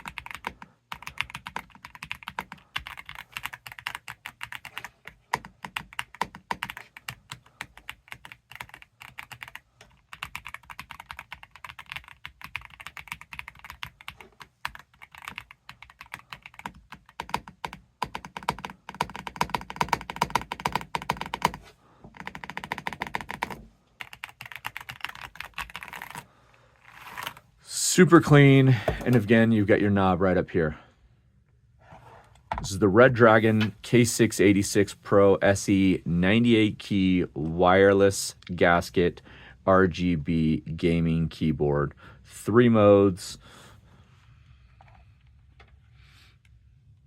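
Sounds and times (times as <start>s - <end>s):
typing on mechanical keyboard: 0.0s - 26.2s.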